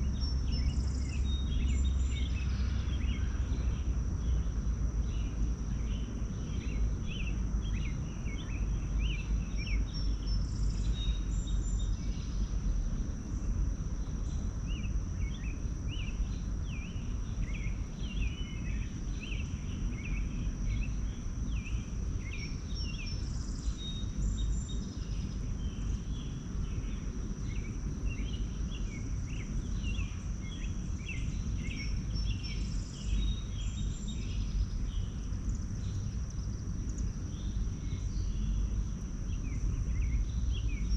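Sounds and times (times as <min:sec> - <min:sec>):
low rumbling background: 0:00.0 - 0:40.9
small birds chirping: 0:14.2 - 0:40.9.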